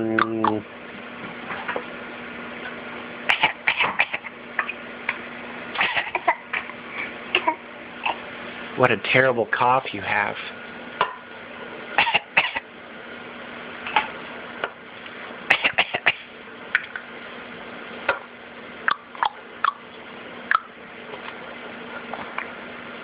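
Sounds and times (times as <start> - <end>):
short sharp coughs: 3.3 - 4.8, 5.8 - 6.4, 12.0 - 12.7, 15.5 - 16.3.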